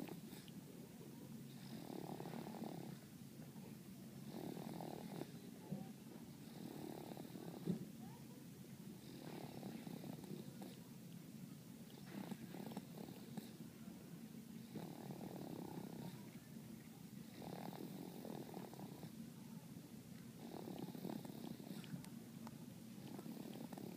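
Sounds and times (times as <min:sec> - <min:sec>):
pet snoring: 0:01.5 - 0:03.0, 0:04.2 - 0:05.4, 0:06.3 - 0:07.8, 0:09.0 - 0:10.9, 0:11.9 - 0:13.6, 0:14.6 - 0:16.2, 0:17.2 - 0:19.2, 0:20.4 - 0:22.0, 0:23.0 - 0:23.9.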